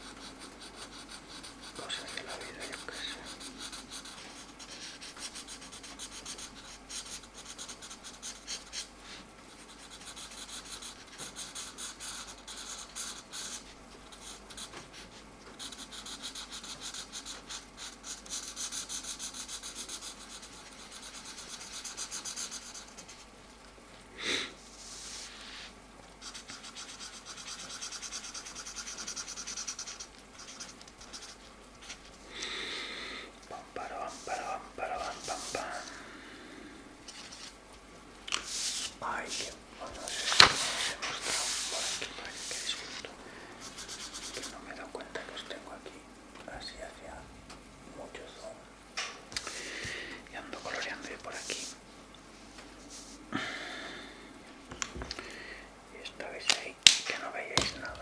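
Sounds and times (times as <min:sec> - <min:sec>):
markers scratching on paper: 0:00.0 - 0:23.3, 0:24.8 - 0:32.1, 0:33.5 - 0:36.0, 0:38.3 - 0:45.8, 0:50.6 - 0:51.8, 0:56.2 - 0:58.0.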